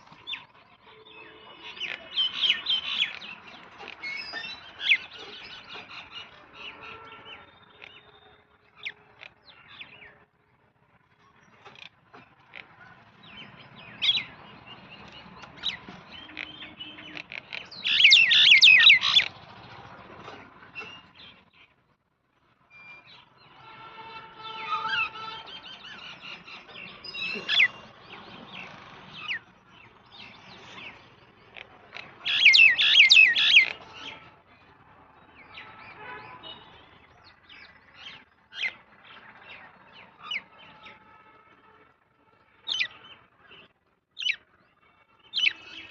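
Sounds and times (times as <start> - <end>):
small birds chirping: 0.1 - 10.3, 11.3 - 21.8, 24.7 - 34.3, 42.6 - 45.9.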